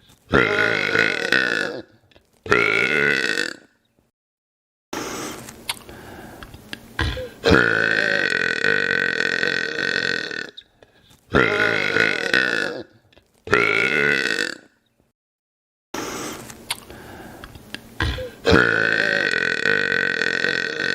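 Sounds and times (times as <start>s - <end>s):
man burping loudly: 0.3s - 3.7s, 7.0s - 10.6s, 11.3s - 14.8s, 18.0s - 20.9s.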